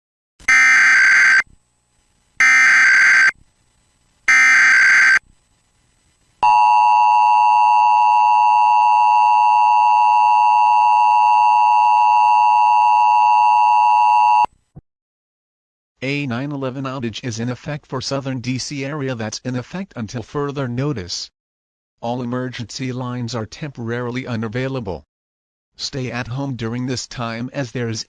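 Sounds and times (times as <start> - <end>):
data tone bursts: 0.4 - 1.5, 2.4 - 3.4, 4.3 - 5.2.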